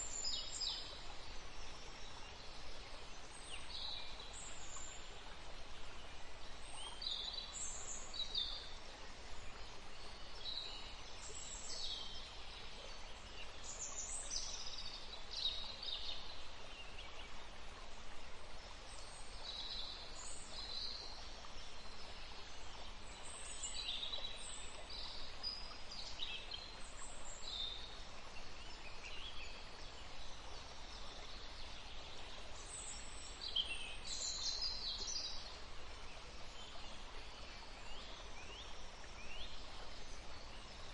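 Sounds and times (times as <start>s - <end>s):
soft background hiss: 0.0s - 40.9s.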